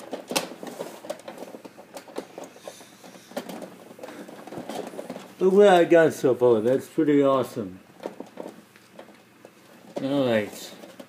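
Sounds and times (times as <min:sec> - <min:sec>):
plastic printer parts rattling: 0:00.0 - 0:11.0.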